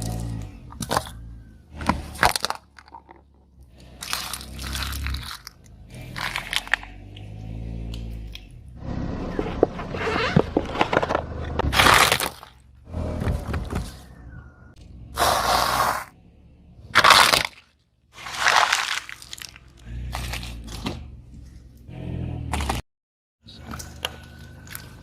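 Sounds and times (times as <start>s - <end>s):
brittle objects crunching under car: 0.0s - 7.3s, 10.0s - 12.6s, 17.0s - 21.5s.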